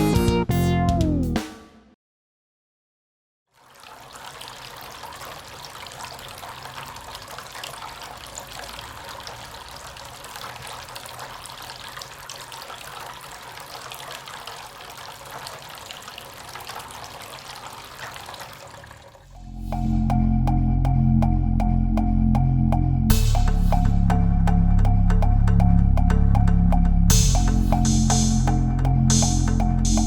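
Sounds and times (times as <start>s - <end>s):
fountain water trickling: 3.5s - 19.9s.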